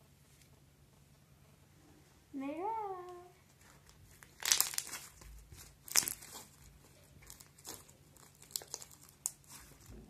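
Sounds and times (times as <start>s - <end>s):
slime sticky crackles and pops: 4.2s - 9.8s.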